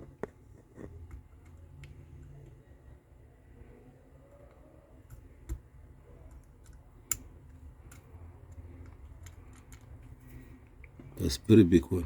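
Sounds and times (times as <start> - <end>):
small parts clicking and tapping: 0.0 - 2.6, 4.4 - 11.1
low steady hum: 0.0 - 12.0.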